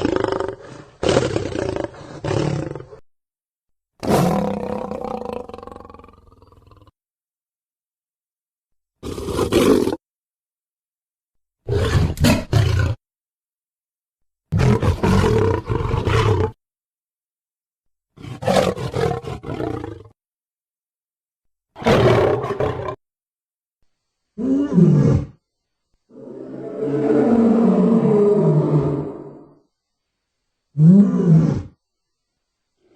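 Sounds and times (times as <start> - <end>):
big cat roaring: 0.0 - 3.0, 4.0 - 6.9, 11.7 - 13.0, 14.5 - 16.6, 18.2 - 20.1, 21.8 - 23.0, 24.4 - 25.4, 26.1 - 29.6, 30.8 - 31.8.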